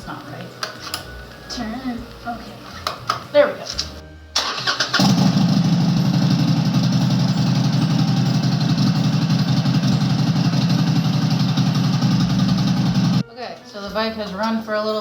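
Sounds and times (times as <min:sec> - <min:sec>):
motorcycle engine idling: 0:04.9 - 0:13.2.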